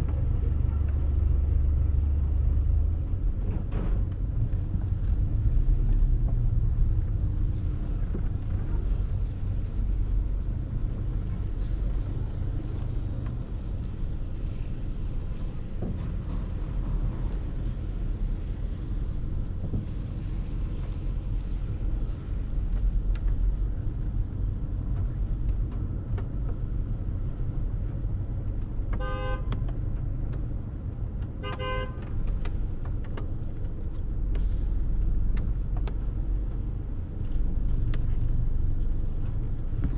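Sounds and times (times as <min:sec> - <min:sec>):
city traffic rumble: 0:00.0 - 0:39.9
car horn toots: 0:29.0 - 0:29.5, 0:31.4 - 0:32.0.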